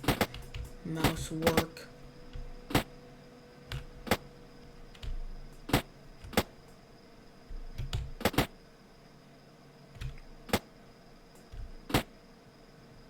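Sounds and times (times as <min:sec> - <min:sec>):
computer mouse clicks: 0:04.9 - 0:06.8, 0:07.5 - 0:08.6, 0:09.9 - 0:10.7.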